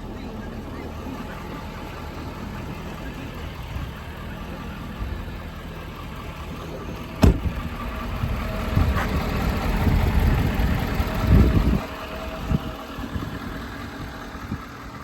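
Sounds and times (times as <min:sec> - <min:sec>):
engine idling: 0:00.0 - 0:15.0
sharp knock: 0:07.2 - 0:07.6.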